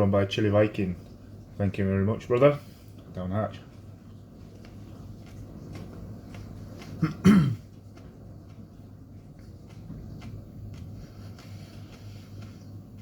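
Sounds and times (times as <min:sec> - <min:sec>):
man chewing: 0:03.7 - 0:13.0
man coughing: 0:07.0 - 0:07.7.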